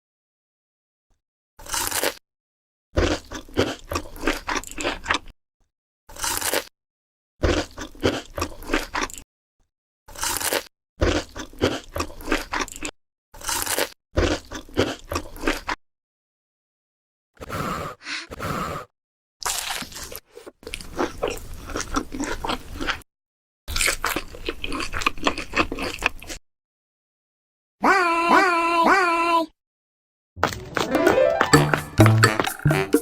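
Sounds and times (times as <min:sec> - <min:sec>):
crisp food crunching: 0:01.6 - 0:02.2, 0:03.0 - 0:05.3, 0:06.1 - 0:06.7, 0:07.4 - 0:09.2, 0:10.1 - 0:15.8, 0:19.4 - 0:23.0, 0:23.7 - 0:26.4.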